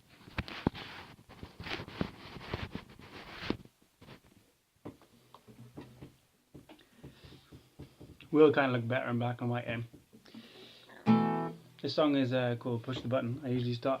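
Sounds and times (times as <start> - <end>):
rustling handling noise: 0.0 - 6.8.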